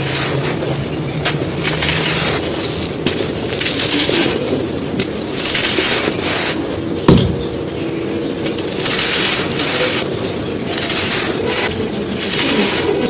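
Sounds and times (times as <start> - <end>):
sand shapes crumbling: 0.0 - 13.0
sharp knock: 7.1 - 7.6.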